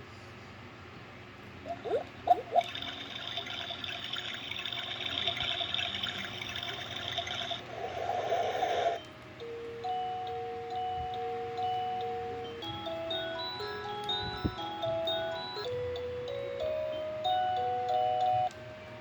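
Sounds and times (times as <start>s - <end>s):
flowing water sound: 1.7s - 9.0s
tune of held notes: 9.0s - 19.0s.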